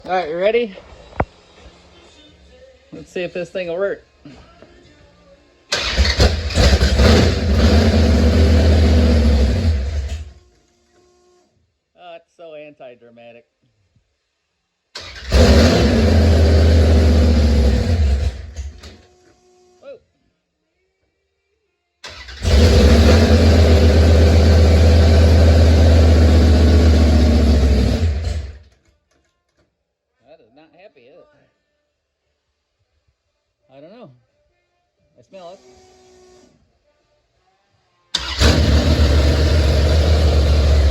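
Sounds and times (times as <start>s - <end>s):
old car engine starting and running: 5.7s - 10.4s, 15.0s - 19.0s, 22.0s - 28.8s, 38.2s - 40.9s.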